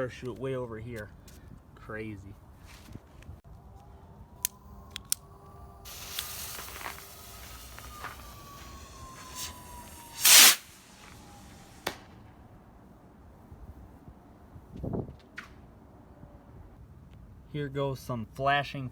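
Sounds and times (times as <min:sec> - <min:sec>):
firework hissing and crackling: 0:05.3 - 0:12.3
loud firework pop: 0:05.9 - 0:12.1.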